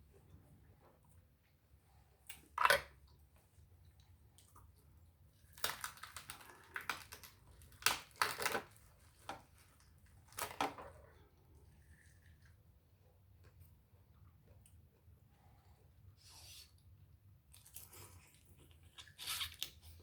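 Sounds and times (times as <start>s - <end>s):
crab shells cracking: 5.4s - 8.8s.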